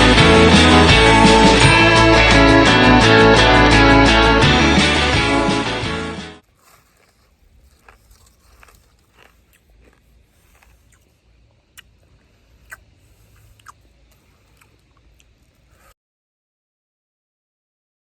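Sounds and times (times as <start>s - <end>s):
low steady hum: 6.4s - 15.9s.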